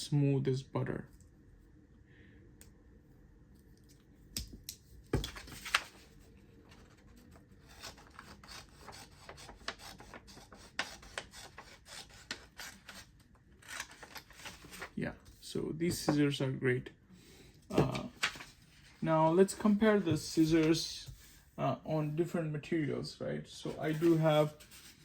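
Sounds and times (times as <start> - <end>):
paper rustling: 5.1 - 15.0, 17.7 - 19.1, 23.7 - 25.0.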